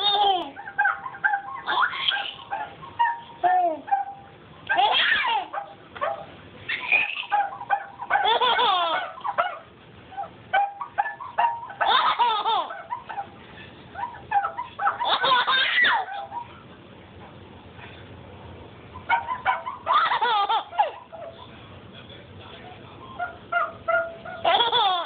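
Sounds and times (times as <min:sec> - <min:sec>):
small child laughing: 0:00.0 - 0:00.8, 0:01.6 - 0:02.5, 0:04.7 - 0:05.7, 0:06.7 - 0:07.5, 0:08.1 - 0:09.3, 0:11.8 - 0:13.3, 0:14.0 - 0:16.5, 0:19.3 - 0:21.1, 0:24.4 - 0:25.0.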